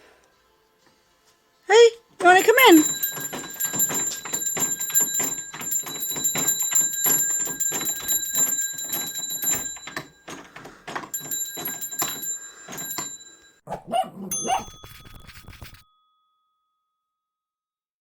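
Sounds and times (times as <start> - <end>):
dog ringing doorbell: 2.3 - 16.1.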